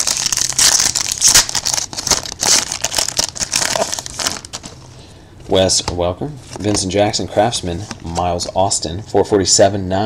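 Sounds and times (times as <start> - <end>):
foil wrapper tearing and crinkling: 0.0 - 4.7.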